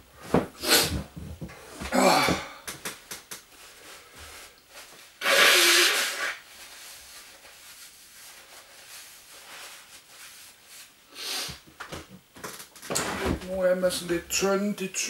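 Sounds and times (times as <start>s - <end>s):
clothes rustling and scraping: 3.0s - 14.4s.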